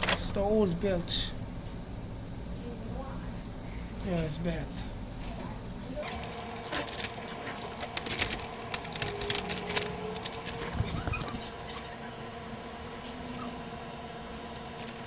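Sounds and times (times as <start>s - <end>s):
faint steady hum: 0.0s - 15.0s
plastic parts clicking and rustling: 6.0s - 15.0s.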